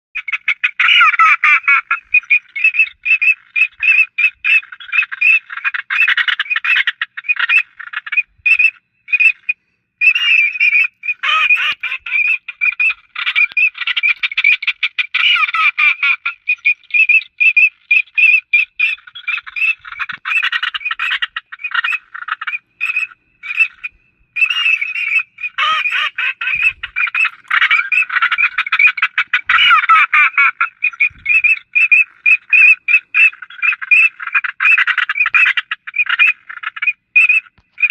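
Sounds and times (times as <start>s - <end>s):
flock of birds chattering: 0.2s - 37.9s.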